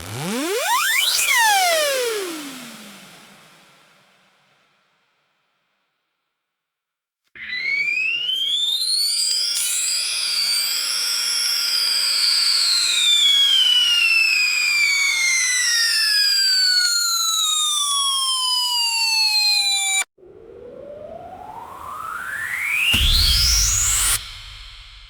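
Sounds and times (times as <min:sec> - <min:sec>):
high whistling tone gliding down: 0:07.4 - 0:25.0
tone rising in pitch: 0:20.2 - 0:25.0.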